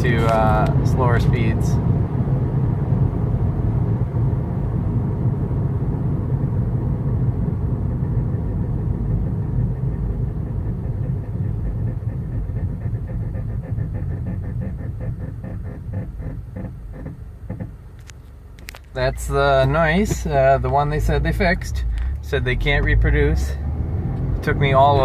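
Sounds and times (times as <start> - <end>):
road and drivetrain rumble: 0.0 - 25.0
rhythmic pulsing brake noise: 7.6 - 23.6.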